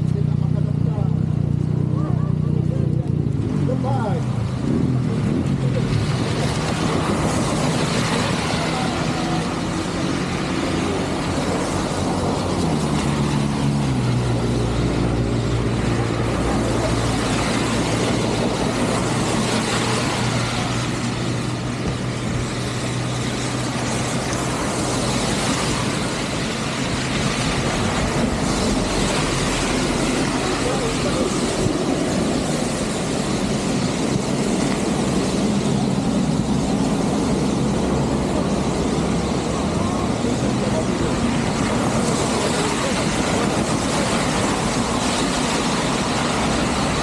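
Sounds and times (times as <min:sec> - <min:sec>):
vehicle engine running: 0:00.0 - 0:34.9
wind and road noise: 0:00.0 - 0:47.0.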